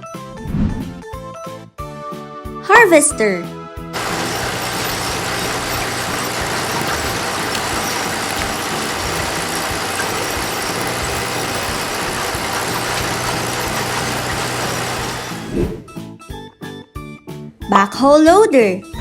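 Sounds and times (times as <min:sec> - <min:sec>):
harvester engine and machinery running: 0:04.0 - 0:15.9.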